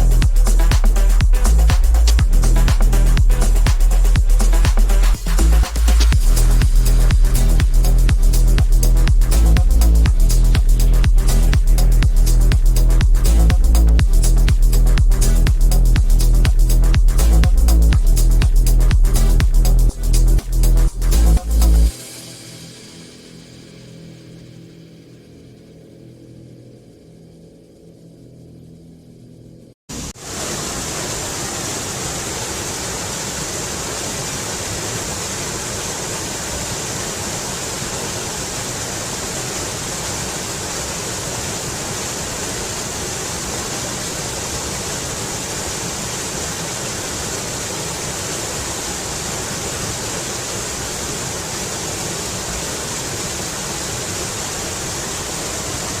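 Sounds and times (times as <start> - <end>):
waterfall rushing: 29.9 - 56.0.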